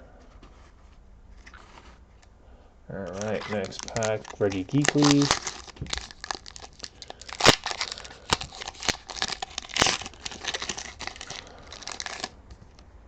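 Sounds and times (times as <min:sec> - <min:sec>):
foil wrapper crinkling and tearing: 0:03.1 - 0:12.8.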